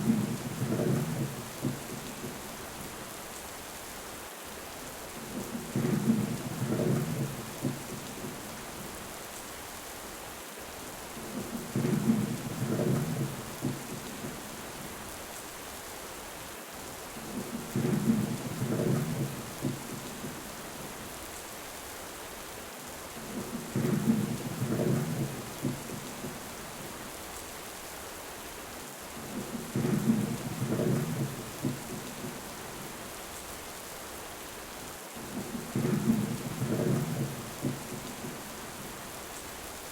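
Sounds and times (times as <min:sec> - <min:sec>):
steady rain falling: 0:00.0 - 0:39.9
low thunder rumble: 0:23.3 - 0:26.4, 0:29.3 - 0:32.5, 0:35.3 - 0:38.5.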